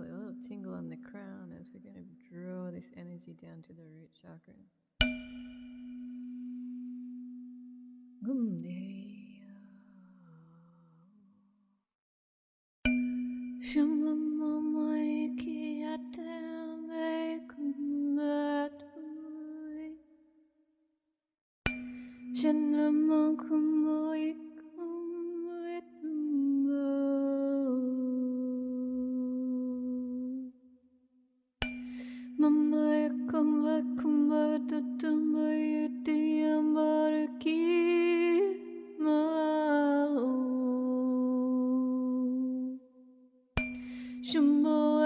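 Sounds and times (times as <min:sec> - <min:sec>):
tuning fork ringing: 0:00.0 - 0:02.2, 0:05.0 - 0:08.4, 0:12.9 - 0:17.6, 0:21.7 - 0:24.7, 0:31.6 - 0:38.7, 0:43.6 - 0:45.0
woman singing wordless notes: 0:00.0 - 0:03.2, 0:08.2 - 0:10.7, 0:13.6 - 0:20.0, 0:22.3 - 0:30.5, 0:32.0 - 0:42.9, 0:43.9 - 0:45.0.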